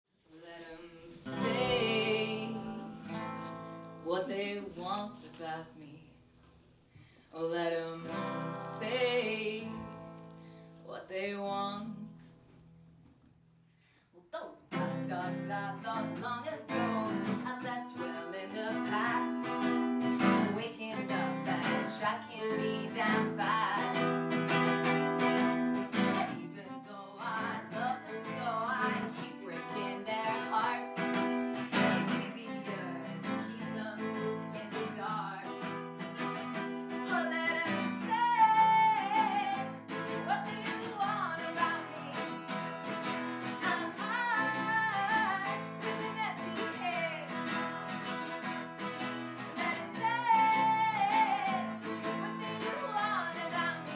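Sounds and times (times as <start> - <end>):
person singing: 0.3 - 6.0, 14.2 - 24.4, 37.0 - 42.5, 43.5 - 47.5, 49.5 - 53.9
acoustic guitar strumming: 1.2 - 5.2, 8.0 - 10.7, 14.7 - 53.9.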